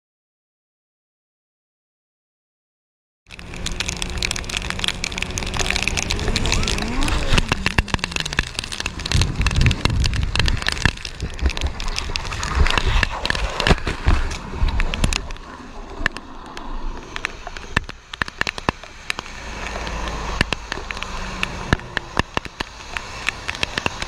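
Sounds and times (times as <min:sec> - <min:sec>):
sharp clicks and knocks: 0:03.3 - 0:24.0
vehicle noise: 0:03.3 - 0:24.0
rising and falling tone: 0:03.4 - 0:10.5.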